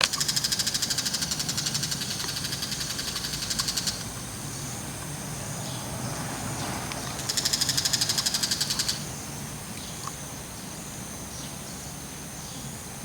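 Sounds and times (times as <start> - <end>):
shrike chattering call: 7.2 - 9.1.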